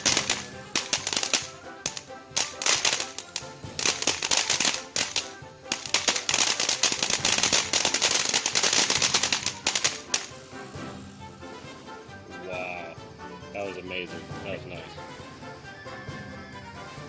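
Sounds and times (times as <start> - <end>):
firework fountain crackling: 0.0 - 11.2
background music: 0.0 - 17.0.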